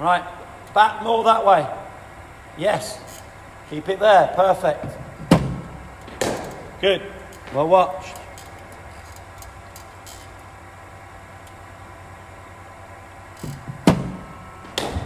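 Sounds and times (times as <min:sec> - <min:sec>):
low hum: 0:00.0 - 0:15.0
bowling machine launching ball: 0:04.8 - 0:08.6, 0:13.4 - 0:15.0
bat striking ball: 0:05.2 - 0:07.6, 0:13.6 - 0:15.0.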